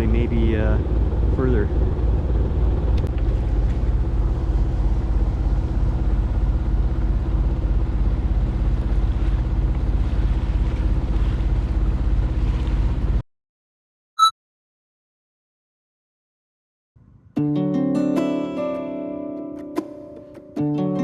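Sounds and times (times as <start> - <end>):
boat engine droning: 3.8 - 12.5.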